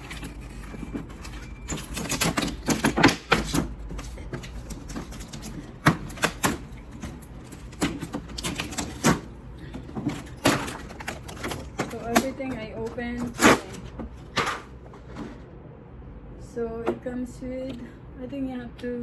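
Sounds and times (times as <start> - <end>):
packaging clicks and crackles: 0.0 - 14.4.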